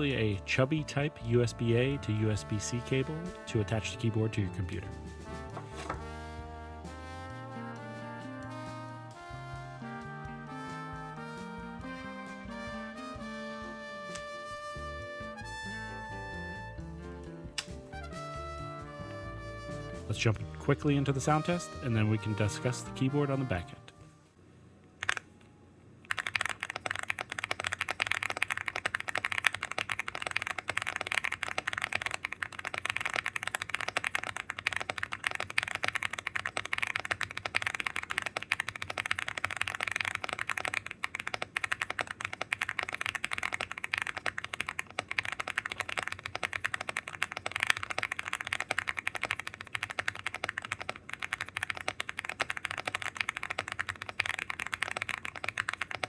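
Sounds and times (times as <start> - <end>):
mechanical keyboard typing: 25.0 - 25.2, 26.1 - 56.0.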